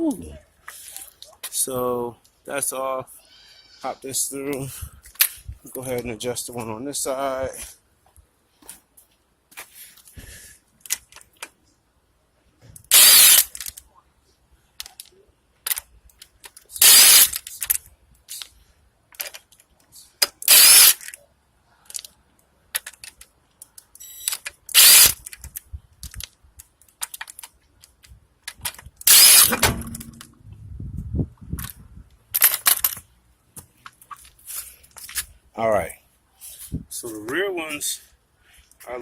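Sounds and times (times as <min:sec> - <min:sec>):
ratchet wrench clicking: 0:12.9 - 0:13.7, 0:16.8 - 0:17.7, 0:20.4 - 0:21.1, 0:24.3 - 0:25.3, 0:29.1 - 0:30.2
low metallic clunk: 0:29.5 - 0:30.6.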